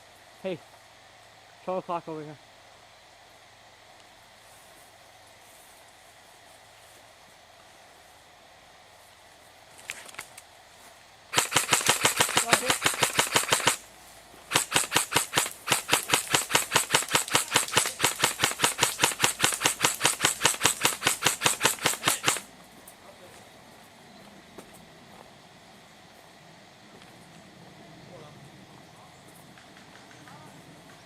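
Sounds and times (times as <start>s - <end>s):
airsoft gun rapid firing: 11.3s - 13.9s, 14.5s - 22.5s.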